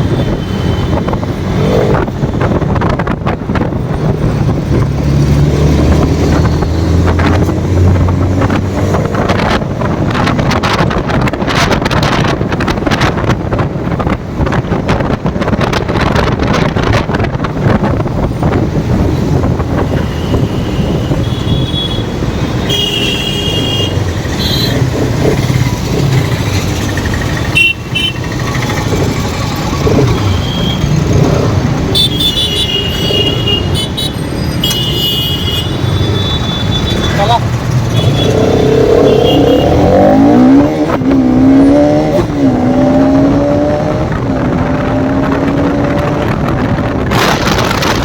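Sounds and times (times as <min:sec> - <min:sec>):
wind buffeting microphone: 0:00.0 - 0:22.6, 0:39.6 - 0:48.0
road noise: 0:00.0 - 0:48.0
motorcycle engine: 0:17.5 - 0:48.0
vehicle horns tooting: 0:19.8 - 0:24.9, 0:27.5 - 0:28.4, 0:30.0 - 0:31.0, 0:31.9 - 0:40.1.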